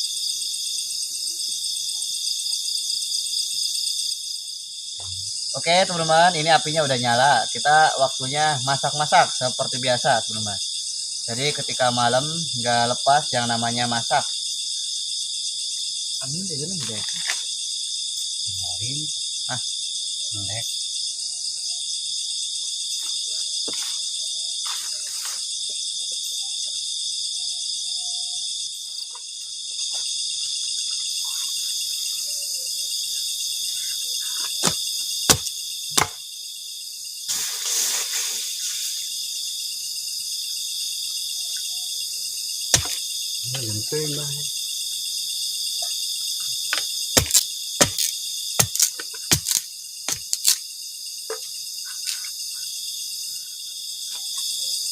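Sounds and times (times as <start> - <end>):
night insects chirring: 0.0 - 54.9
brief hissing: 37.3 - 39.1.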